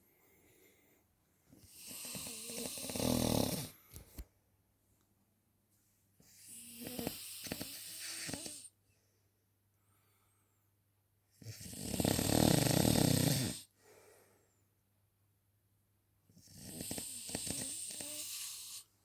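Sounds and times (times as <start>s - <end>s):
man snoring: 1.7s - 3.8s, 6.4s - 8.7s, 11.4s - 13.7s, 16.4s - 18.8s.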